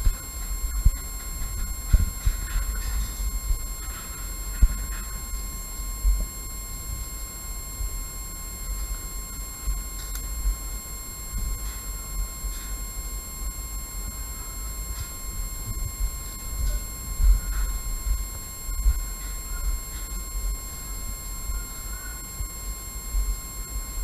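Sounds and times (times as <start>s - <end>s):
wind rumble on microphone: 0.0s - 8.0s, 14.2s - 21.6s
high-pitched electronic whine: 0.0s - 24.0s.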